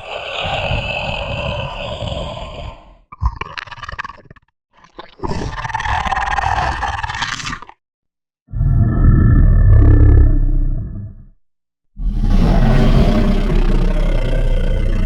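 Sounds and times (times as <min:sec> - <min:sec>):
monster roar: 0:00.0 - 0:03.0, 0:05.2 - 0:07.7, 0:08.5 - 0:11.2, 0:12.0 - 0:15.0
choppy monster growls: 0:00.0 - 0:04.3, 0:04.9 - 0:07.8, 0:12.0 - 0:15.0.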